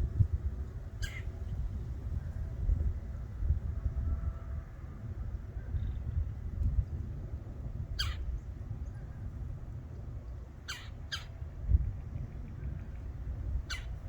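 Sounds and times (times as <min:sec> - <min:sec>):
steady low rumble: 0:00.0 - 0:14.0
woodpecker harsh calls: 0:01.0 - 0:01.3, 0:08.0 - 0:08.2, 0:10.6 - 0:11.4, 0:13.6 - 0:14.0.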